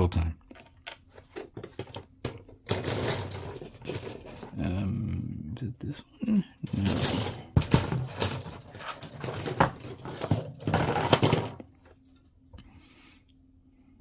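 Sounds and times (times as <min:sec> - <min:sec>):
plastic pieces rustling and clicking: 0:01.2 - 0:04.6, 0:06.7 - 0:11.6.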